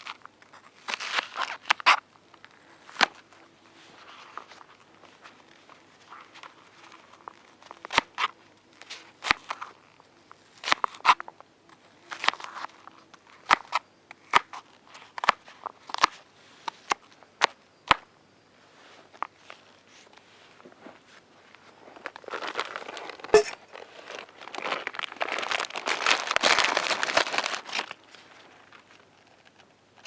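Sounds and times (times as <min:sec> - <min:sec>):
dry wood snapping and cracking: 0:24.8 - 0:28.0.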